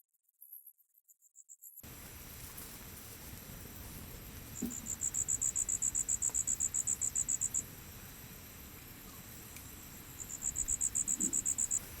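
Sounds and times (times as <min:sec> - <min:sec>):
insect chirping: 0:04.8 - 0:07.6, 0:09.9 - 0:11.9.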